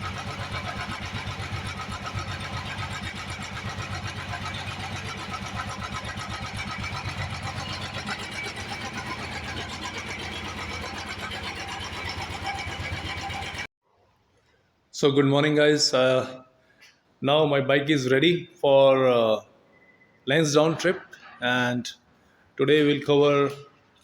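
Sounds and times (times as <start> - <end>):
motorcycle engine idling: 0.0 - 13.7.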